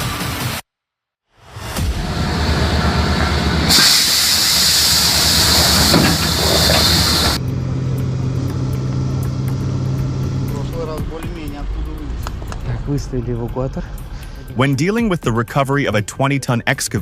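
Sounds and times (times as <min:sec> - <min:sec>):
heavy machine running: 0:01.5 - 0:14.5
loud steady hiss: 0:03.6 - 0:07.4.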